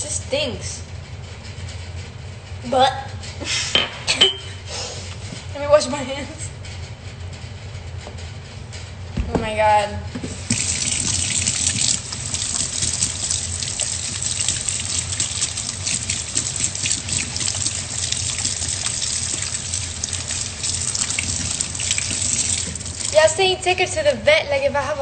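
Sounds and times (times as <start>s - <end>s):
tap running into a sink: 10.2s - 23.1s.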